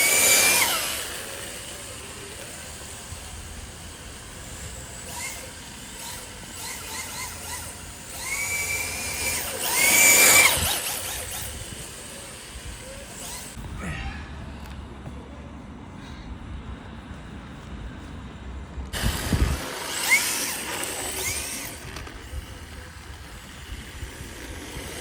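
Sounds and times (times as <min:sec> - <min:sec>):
rc car motor whining: 0:00.0 - 0:13.6, 0:18.9 - 0:25.0.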